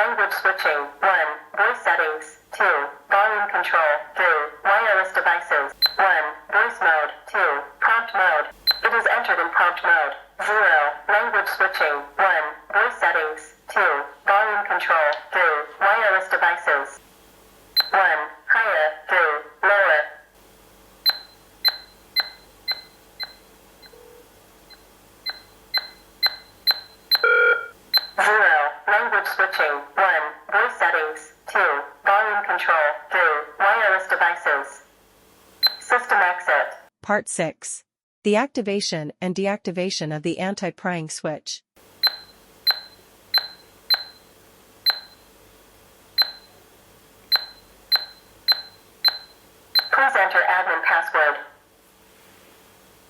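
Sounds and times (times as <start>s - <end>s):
keypad beeps: 5.8s - 6.0s, 8.6s - 8.9s, 17.8s - 18.0s, 21.0s - 28.2s, 35.6s - 35.9s, 42.0s - 45.3s, 46.2s - 46.6s, 47.3s - 50.0s.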